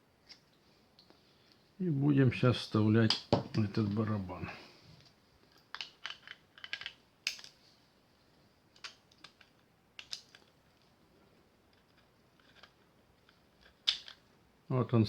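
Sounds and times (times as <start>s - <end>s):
small metal clicks: 5.5s - 7.6s, 8.8s - 10.6s, 11.7s - 14.2s.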